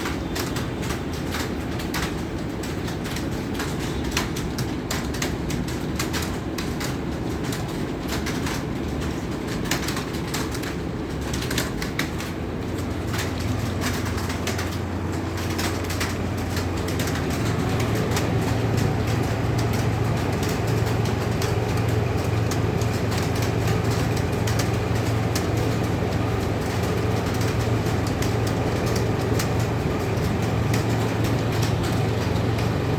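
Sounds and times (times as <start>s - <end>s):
fast typing on keyboard: 0.0s - 32.9s
steady low hum: 10.3s - 32.9s.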